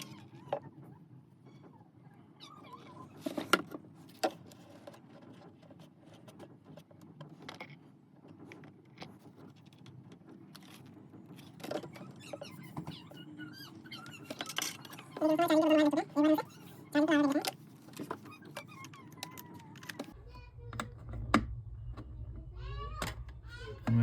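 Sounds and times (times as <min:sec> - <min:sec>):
faint squeaks: 0:00.0 - 0:06.8, 0:10.4 - 0:24.0
low hum: 0:20.1 - 0:24.0.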